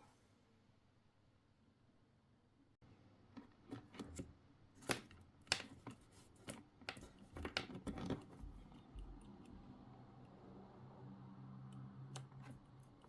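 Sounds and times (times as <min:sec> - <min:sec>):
sharp clicks and light scrapes: 0:03.4 - 0:09.8, 0:11.7 - 0:13.0.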